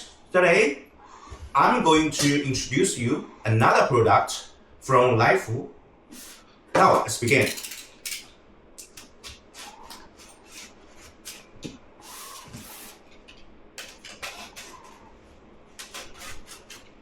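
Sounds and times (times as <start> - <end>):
packaging rubbing scrape: 9.2 - 13.2, 13.8 - 15.2, 15.8 - 17.0.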